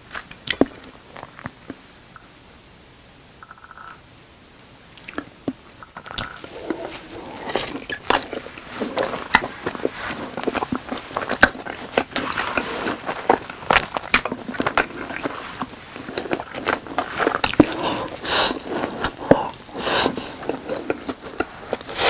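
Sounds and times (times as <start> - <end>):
chewing and biting food: 6.1 - 22.0.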